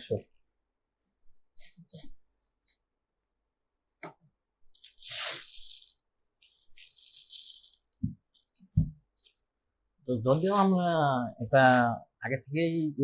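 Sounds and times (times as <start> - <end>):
packaging crinkling and rustling: 4.8 - 9.4.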